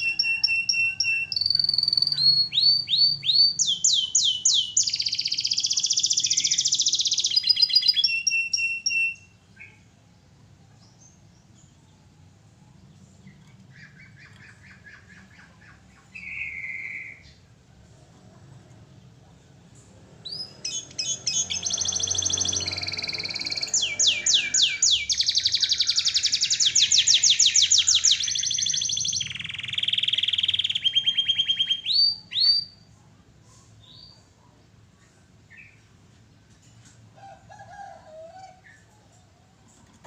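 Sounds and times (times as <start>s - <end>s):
canary singing trills: 0.0s - 9.9s, 20.2s - 32.9s.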